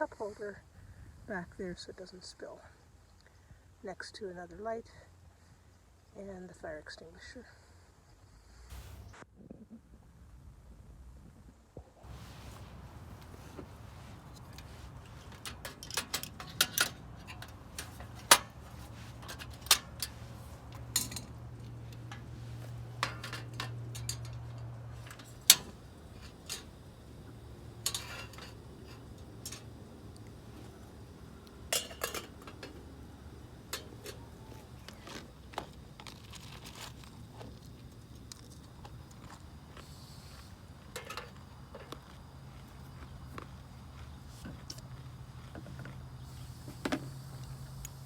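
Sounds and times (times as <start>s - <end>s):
low steady hum: 8.7s - 48.0s
small items clinking and clattering: 14.1s - 39.4s.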